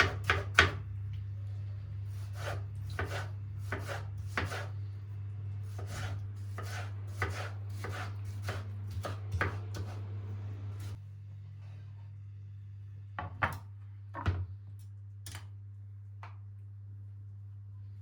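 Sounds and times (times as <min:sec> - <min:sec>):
knife chopping on cutting board: 0:00.0 - 0:00.8, 0:02.3 - 0:04.7, 0:05.7 - 0:10.1.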